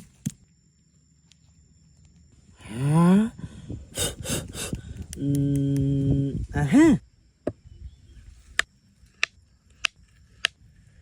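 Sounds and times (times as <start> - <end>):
man humming: 2.6 - 7.0.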